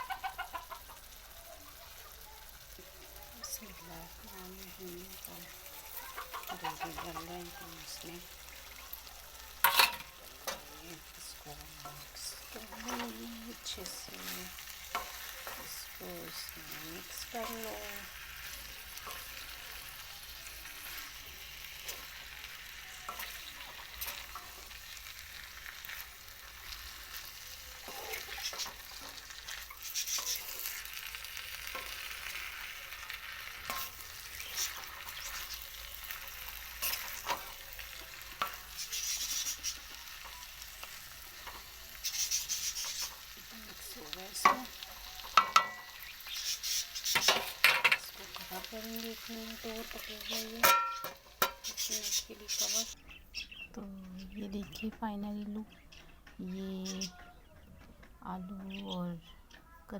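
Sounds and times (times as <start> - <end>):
food sizzling in a pan: 0.0 - 53.0
spoon scraping and knocking pan: 5.2 - 53.0.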